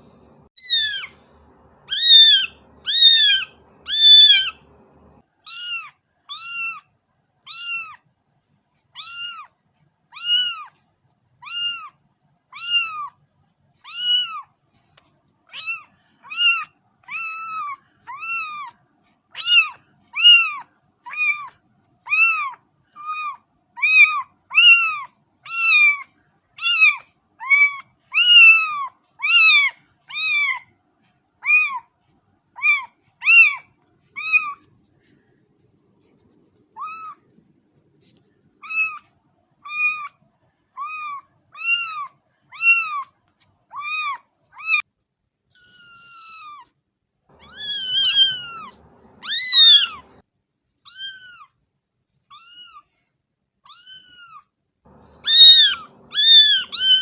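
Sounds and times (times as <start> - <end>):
cat meowing: 0.2 - 6.8, 7.5 - 8.0, 9.0 - 9.5, 10.1 - 10.8, 11.4 - 11.9, 12.6 - 13.2, 13.8 - 14.5, 15.5 - 18.8, 19.4 - 21.5, 22.1 - 30.7, 31.4 - 31.8, 32.6 - 34.7, 36.8 - 37.3, 38.6 - 40.1, 40.8 - 43.1, 43.7 - 44.8, 45.6 - 46.7, 47.4 - 50.2, 50.8 - 51.5, 52.3 - 52.9, 53.7 - 57.0.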